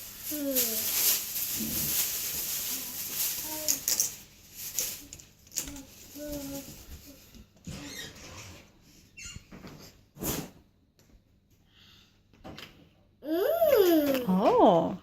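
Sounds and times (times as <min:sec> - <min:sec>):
child murmuring: 0:13.2 - 0:14.4.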